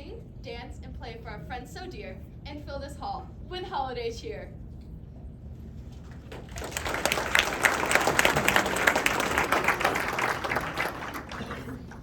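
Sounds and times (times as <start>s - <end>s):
audience applauding: 6.2s - 12.0s.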